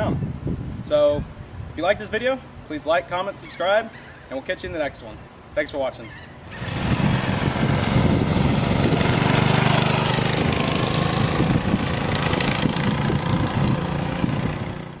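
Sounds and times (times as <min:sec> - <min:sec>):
small engine puttering: 0:06.5 - 0:15.0.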